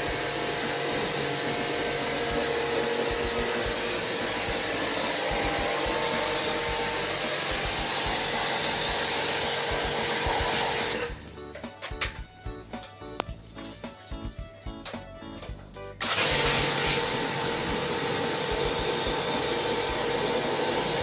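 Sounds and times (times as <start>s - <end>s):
electric machine whirring: 0.0s - 11.8s, 14.9s - 21.0s
background music: 0.0s - 21.0s.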